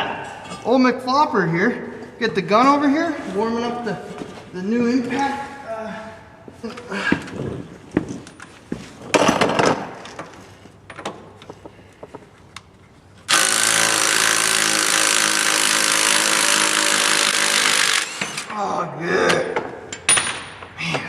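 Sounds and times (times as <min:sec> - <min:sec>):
impact wrench hammering: 0:13.3 - 0:18.5.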